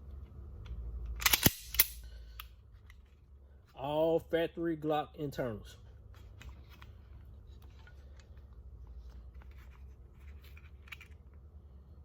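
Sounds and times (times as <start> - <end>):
low steady hum: 0.0 - 12.0
faint handling clicks and rubs: 5.9 - 11.5.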